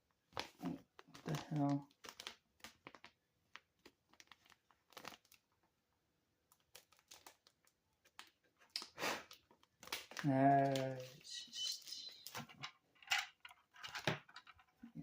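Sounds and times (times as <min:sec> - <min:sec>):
plastic packaging crinkling: 0:00.3 - 0:05.6, 0:06.5 - 0:12.6.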